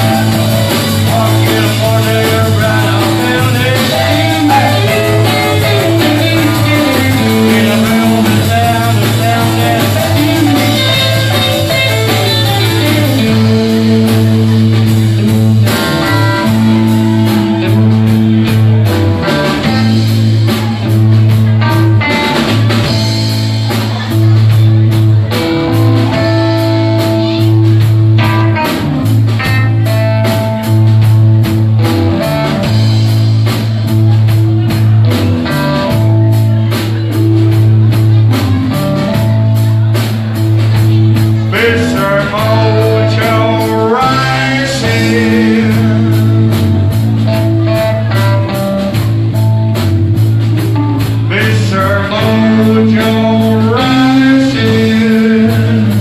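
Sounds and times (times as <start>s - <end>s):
guitar lead line bending: 0.0s - 56.0s
live rock band playing: 0.0s - 56.0s.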